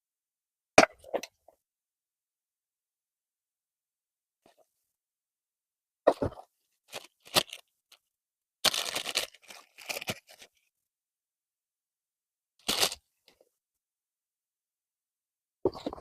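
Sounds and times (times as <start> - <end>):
packaging crinkling and rustling: 6.9 - 7.6, 8.6 - 10.7, 12.6 - 13.0.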